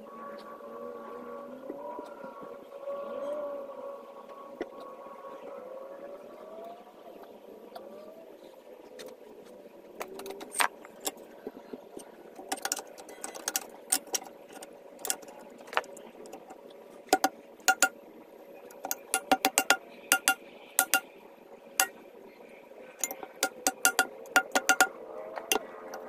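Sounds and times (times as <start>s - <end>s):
steady low hum: 0.0s - 26.0s
sharp metallic clinks and taps: 12.4s - 15.4s, 17.1s - 18.0s, 18.7s - 21.1s, 23.0s - 26.0s.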